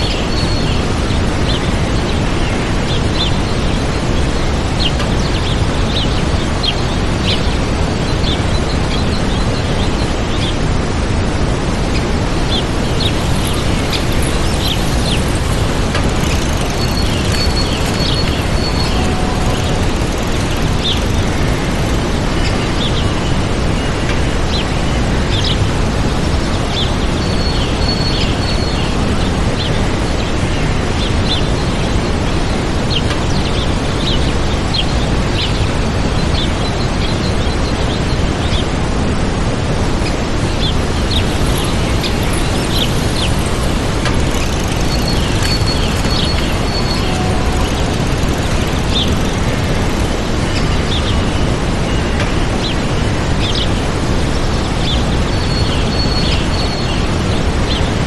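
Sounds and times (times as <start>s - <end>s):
waterfall rushing: 0.0s - 24.8s, 38.2s - 55.2s
small birds chirping: 0.0s - 25.7s, 40.0s - 58.0s.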